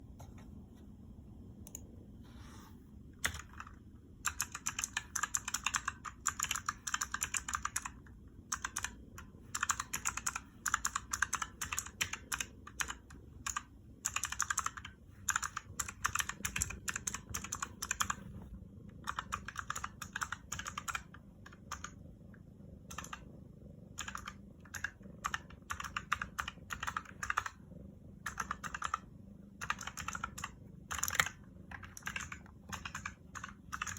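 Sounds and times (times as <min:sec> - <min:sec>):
mechanical keyboard key clicks: 0:29.6 - 0:33.9.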